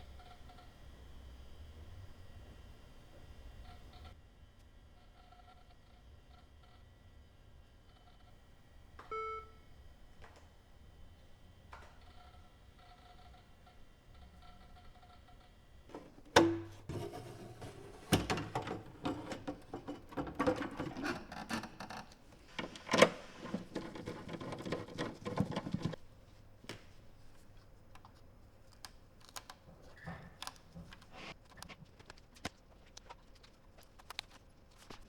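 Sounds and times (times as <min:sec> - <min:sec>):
hard plastic parts clattering: 0:15.9 - 0:26.0.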